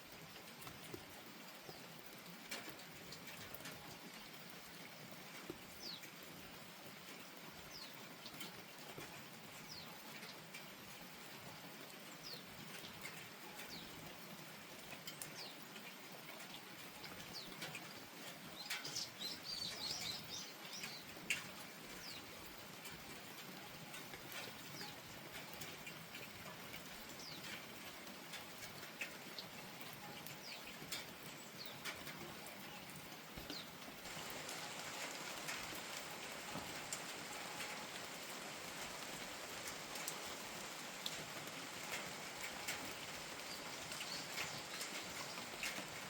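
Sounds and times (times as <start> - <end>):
light rain falling: 0.0 - 46.0
small bird chirping: 18.6 - 21.1.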